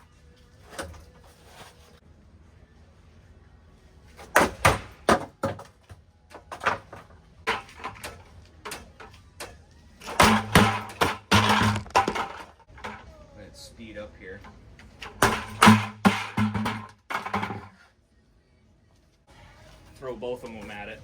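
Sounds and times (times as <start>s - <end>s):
ceiling fan being smashed: 4.2s - 13.1s, 15.0s - 17.8s.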